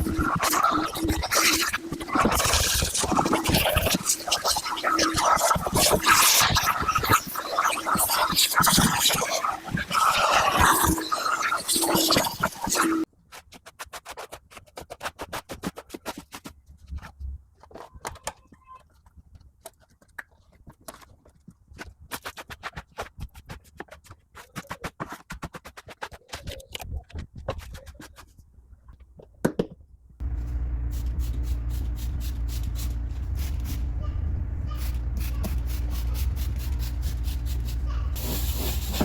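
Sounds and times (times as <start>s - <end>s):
brush scrubbing surfaces: 30.2s - 34.0s, 34.7s - 39.0s.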